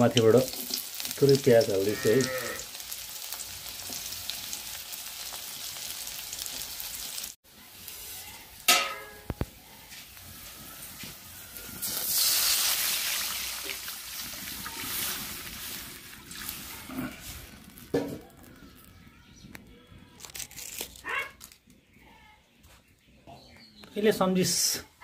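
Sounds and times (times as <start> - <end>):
food sizzling in hot oil: 0.0 - 18.8.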